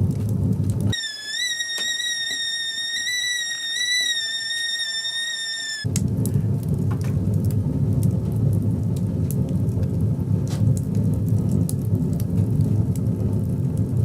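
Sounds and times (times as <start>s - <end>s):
wood fire crackling in a stove: 0.0s - 14.0s
stovetop kettle whistling: 0.9s - 5.9s.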